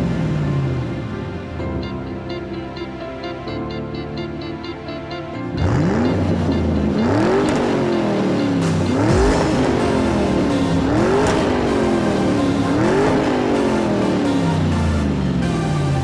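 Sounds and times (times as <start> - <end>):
engine revving: 5.6 - 16.0
steady rushing noise: 6.3 - 15.8.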